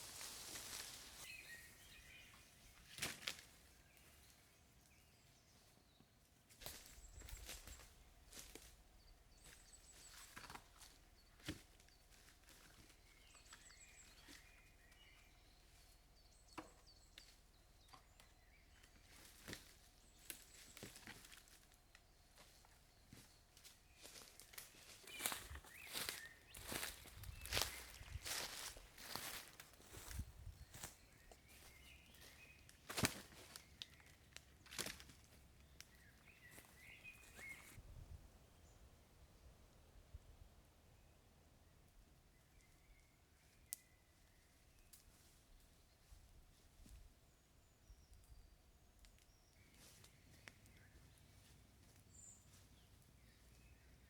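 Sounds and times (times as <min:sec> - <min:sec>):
faint bird chirps: 0:00.2 - 0:02.9, 0:03.8 - 0:34.2, 0:35.6 - 0:38.9.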